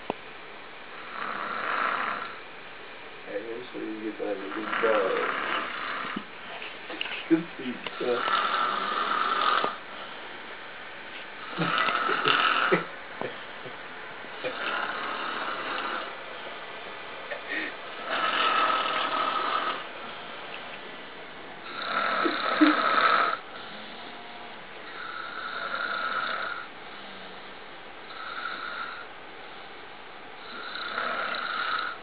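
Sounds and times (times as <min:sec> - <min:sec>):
man snoring loudly: 0:01.0 - 0:02.4, 0:04.2 - 0:06.2, 0:07.9 - 0:09.8, 0:11.4 - 0:12.9, 0:14.4 - 0:16.1, 0:17.6 - 0:19.9, 0:21.6 - 0:24.2, 0:24.8 - 0:27.5, 0:28.1 - 0:29.1, 0:30.4 - 0:32.0.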